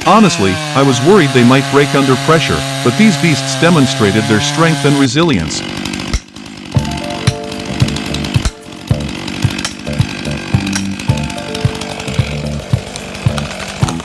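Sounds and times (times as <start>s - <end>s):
chainsaws cutting at full throttle: 0.0s - 14.0s
background music with steady beat: 6.8s - 14.0s.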